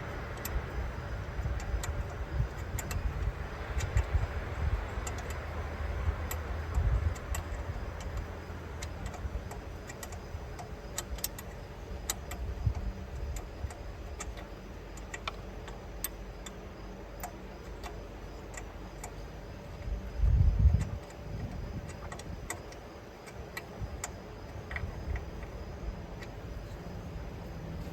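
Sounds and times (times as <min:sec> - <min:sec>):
low rumbling handling noise: 0:00.0 - 0:27.9
wrench clicking on metal bolts: 0:05.0 - 0:05.5, 0:06.2 - 0:14.4.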